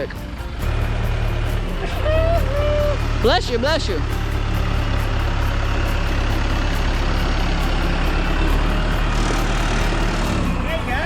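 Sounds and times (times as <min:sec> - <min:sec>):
large engine idling: 0:00.0 - 0:11.0.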